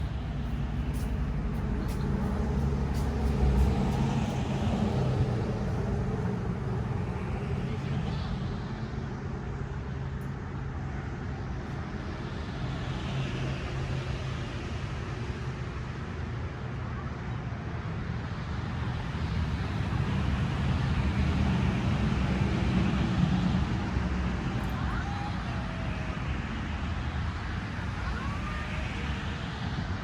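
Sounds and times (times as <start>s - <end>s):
road noise: 0.0s - 30.0s
vehicle engine hum: 0.0s - 30.0s.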